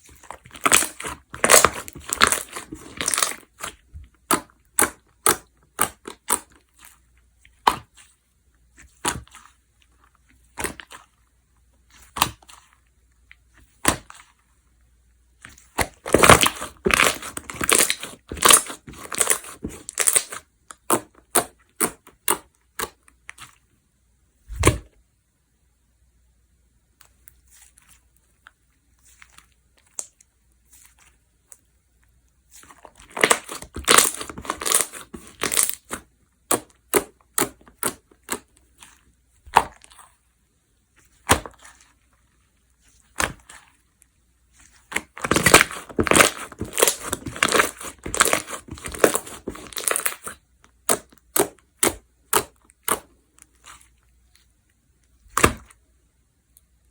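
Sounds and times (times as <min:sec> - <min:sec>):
slime crackling and popping: 0:00.1 - 0:06.7, 0:15.6 - 0:23.0, 0:32.6 - 0:38.8, 0:44.7 - 0:53.8.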